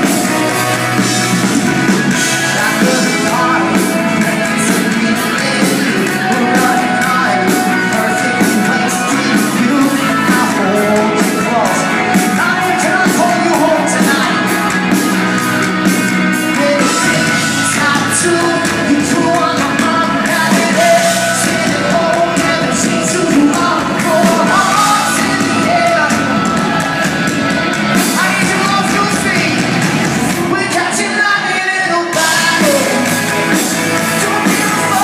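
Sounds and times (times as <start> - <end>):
lead vocal singing: 0.0 - 35.0
live pop-rock band: 0.0 - 35.0.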